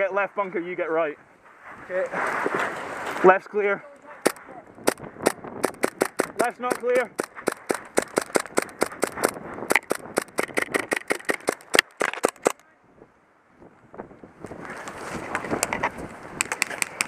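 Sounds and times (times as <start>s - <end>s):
airsoft gunfire: 4.2s - 12.6s.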